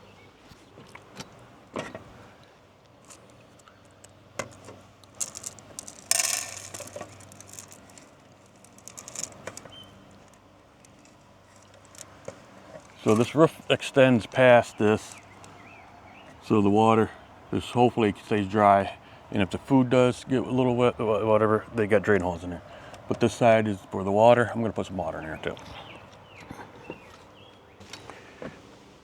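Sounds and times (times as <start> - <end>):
light handling clicks and knocks: 0.5 - 15.6
rattling rustle: 3.0 - 15.5.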